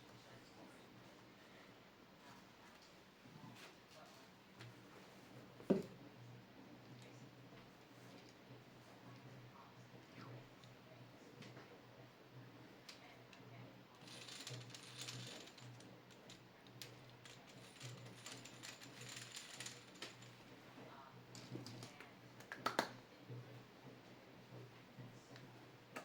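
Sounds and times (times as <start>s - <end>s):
plastic pieces clicking and rattling: 14.0s - 16.4s, 17.2s - 20.4s.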